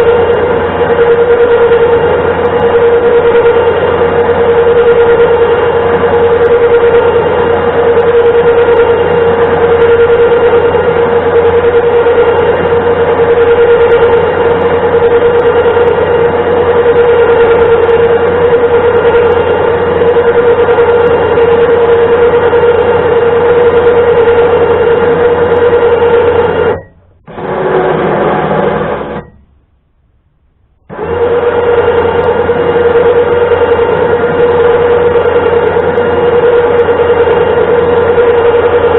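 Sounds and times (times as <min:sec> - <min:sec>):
electric winch motor running: 0:00.0 - 0:29.8, 0:30.8 - 0:38.9.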